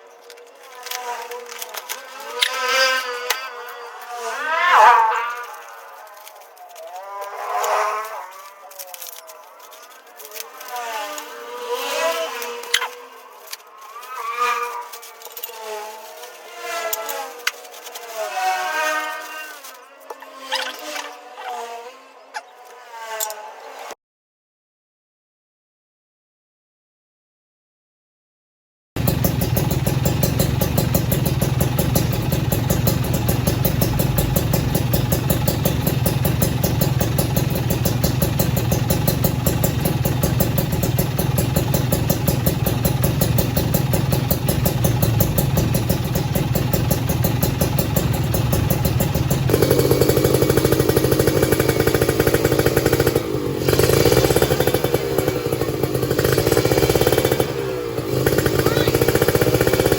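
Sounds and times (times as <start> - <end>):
two-stroke motorcycle engine revving: 0.2 - 24.0, 29.0 - 59.9.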